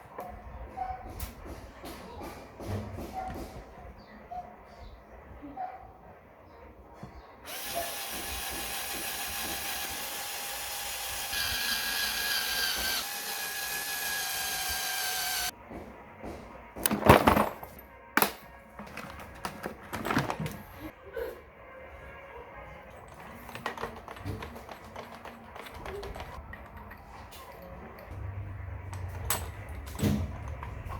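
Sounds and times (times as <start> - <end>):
power tool running: 7.5 - 15.5.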